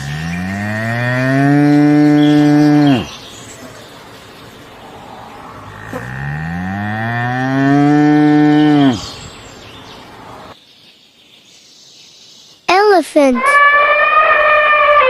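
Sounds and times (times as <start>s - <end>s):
cow mooing: 0.0s - 3.1s, 5.6s - 9.1s.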